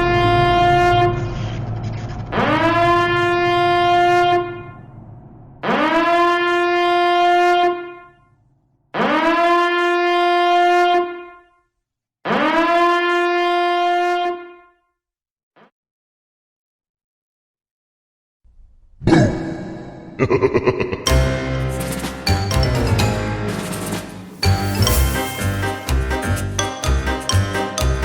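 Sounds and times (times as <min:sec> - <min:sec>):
horn blasts: 0:00.0 - 0:01.5, 0:02.3 - 0:04.9, 0:21.1 - 0:28.0.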